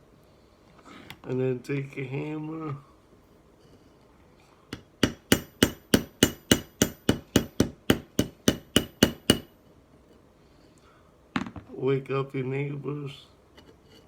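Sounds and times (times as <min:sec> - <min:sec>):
hammer tapping on metal knife: 0:04.7 - 0:09.5.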